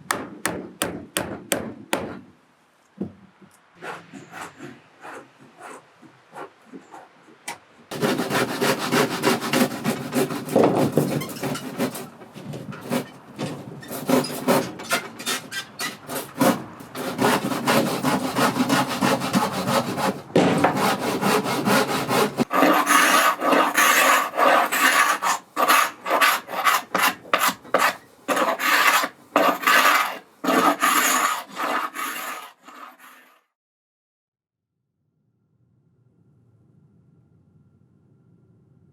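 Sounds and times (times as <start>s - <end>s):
hand tool rasping on wood: 3.8s - 5.8s, 7.9s - 12.1s, 13.8s - 15.5s, 16.1s - 33.4s.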